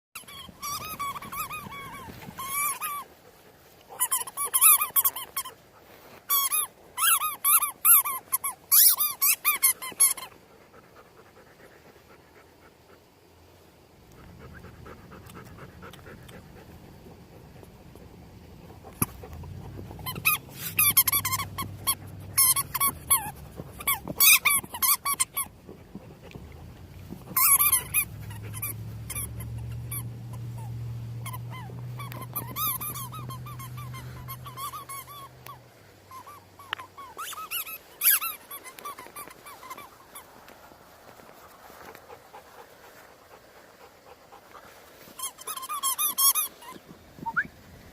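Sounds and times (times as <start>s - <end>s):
squeaky rubber ball squeaking: 0.2s - 3.0s, 4.0s - 5.5s, 6.3s - 10.3s, 18.9s - 40.2s, 45.2s - 47.5s.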